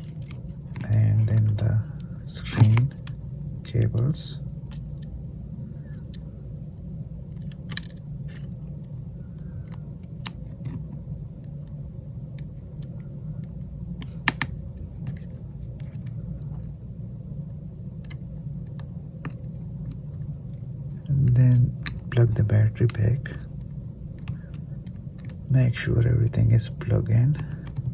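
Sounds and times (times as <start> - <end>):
steady low hum: 0.0 - 27.9
connectors clicking into place: 12.4 - 16.2.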